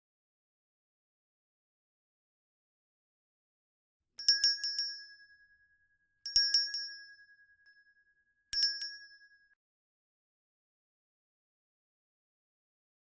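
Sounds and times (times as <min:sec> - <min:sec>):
handbell ringing: 0:04.2 - 0:05.5, 0:06.3 - 0:07.8, 0:08.6 - 0:09.5.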